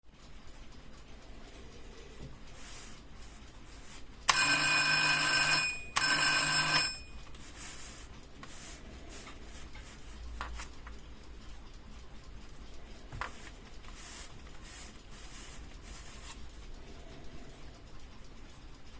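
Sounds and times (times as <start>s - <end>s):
alarm clock ringing: 3.8s - 8.1s.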